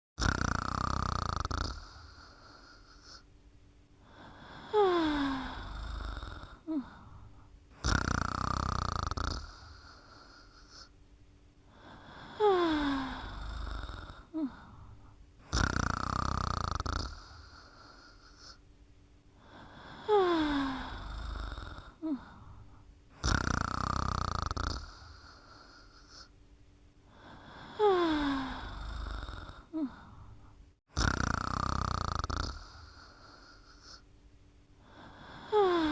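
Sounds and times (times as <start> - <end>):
person snoring with whistling: 0.2 - 2.0, 7.8 - 9.6, 15.5 - 17.2, 23.2 - 25.0, 31.0 - 32.7.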